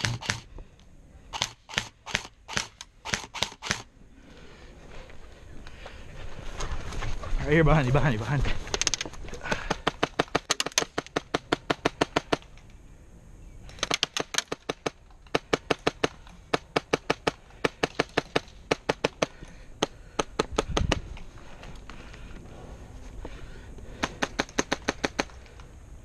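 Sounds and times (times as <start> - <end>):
airsoft guns firing sharp cracks: 0.0 - 0.5, 1.3 - 3.9, 8.8 - 12.6, 13.7 - 21.1, 24.0 - 25.6.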